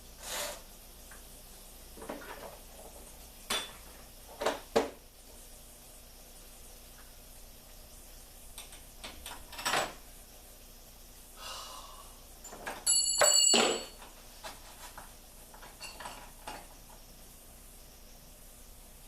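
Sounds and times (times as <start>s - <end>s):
sharp metallic clang: 12.9s - 14.0s.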